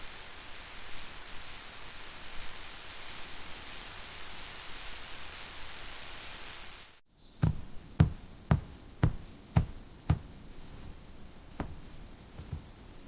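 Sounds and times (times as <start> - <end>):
steady hiss: 0.0 - 13.0
knife chopping on cutting board: 7.4 - 10.4.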